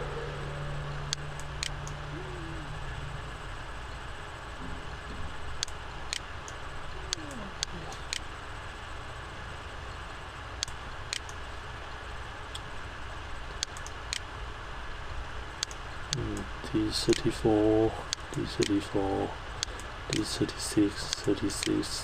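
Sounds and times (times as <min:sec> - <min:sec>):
low hum: 0:00.0 - 0:22.0
steady hiss: 0:00.0 - 0:22.0
computer mouse clicks: 0:05.6 - 0:08.3, 0:10.6 - 0:11.4, 0:13.6 - 0:14.3, 0:15.6 - 0:16.2, 0:18.1 - 0:18.8, 0:21.1 - 0:21.8.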